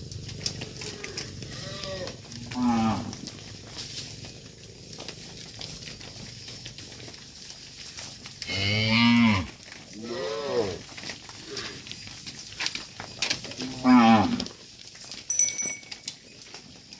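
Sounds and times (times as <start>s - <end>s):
cattle mooing: 0.4s - 3.4s, 8.4s - 10.8s, 13.6s - 14.5s.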